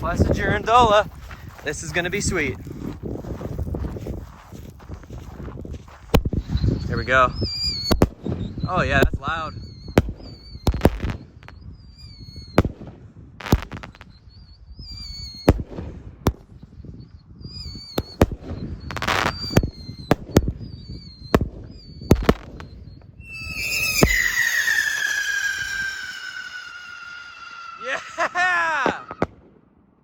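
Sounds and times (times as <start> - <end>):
loud sustained firework whistle: 5.0 - 16.0, 16.6 - 29.4
wavering firework whistles: 5.0 - 29.4
firework bangs: 7.5 - 9.3, 9.9 - 11.6, 12.5 - 14.1, 17.8 - 29.6.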